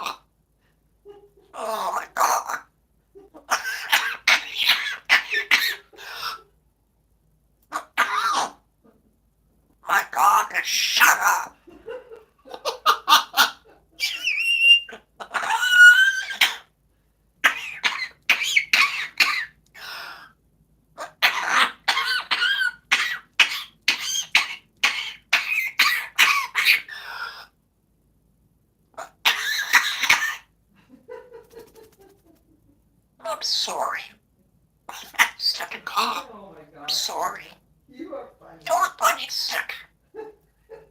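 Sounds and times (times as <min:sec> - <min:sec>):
parrot mimicking coughing: 0:01.5 - 0:02.7, 0:03.4 - 0:06.5, 0:07.7 - 0:08.6, 0:12.6 - 0:16.7, 0:17.4 - 0:20.4, 0:21.0 - 0:27.5, 0:29.0 - 0:30.5, 0:33.2 - 0:34.2, 0:34.9 - 0:36.3, 0:38.6 - 0:40.0
parrot high gliding squeaks: 0:14.0 - 0:16.6.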